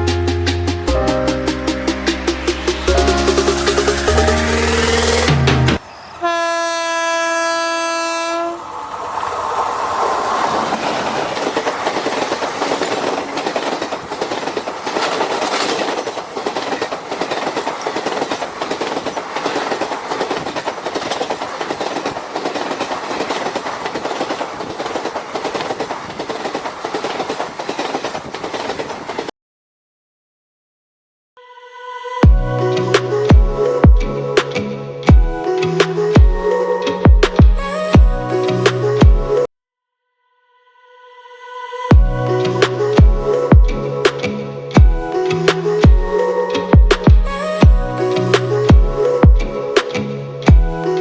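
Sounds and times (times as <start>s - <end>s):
train rushing rumble: 0.0s - 5.8s, 8.5s - 29.3s
train horn: 6.2s - 8.7s
wheels clacking over rail joints: 9.8s - 29.3s.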